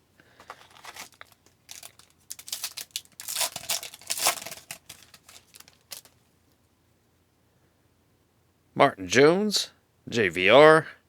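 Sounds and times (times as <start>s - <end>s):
wrapper tearing and crinkling: 0.4s - 6.2s.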